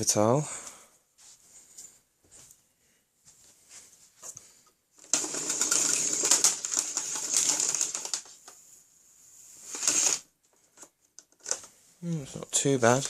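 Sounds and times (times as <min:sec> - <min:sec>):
vacuum cord rewinding rattle: 0:05.0 - 0:08.6, 0:09.6 - 0:10.3.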